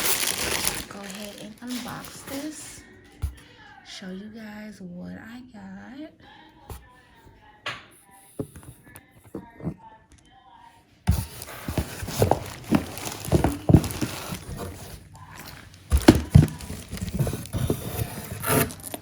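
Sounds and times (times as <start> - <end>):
cardboard and packaging rustling: 0.0 - 2.8, 11.1 - 19.0.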